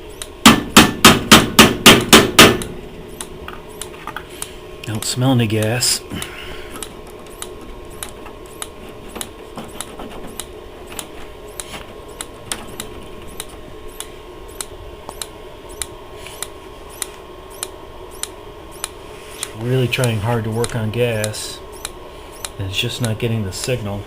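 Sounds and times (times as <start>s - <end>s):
person talking: 4.8s - 6.2s, 19.5s - 21.6s, 22.6s - 24.0s.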